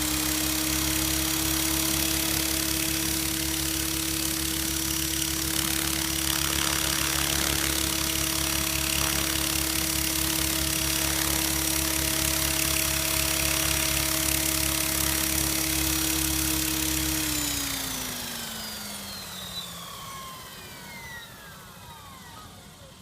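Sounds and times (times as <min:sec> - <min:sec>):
steady hum: 0:00.0 - 0:17.4
engine idling: 0:00.0 - 0:19.4.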